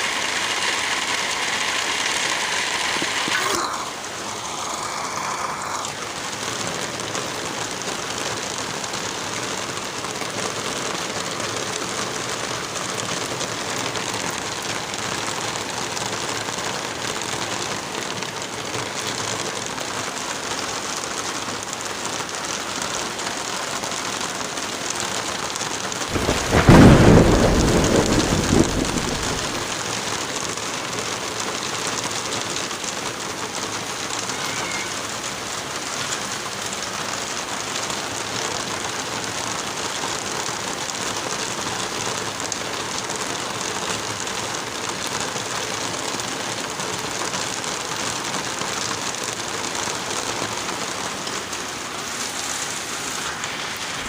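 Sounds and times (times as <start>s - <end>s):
steady rain falling: 0.0s - 54.0s
low rumble of thunder: 26.1s - 29.8s.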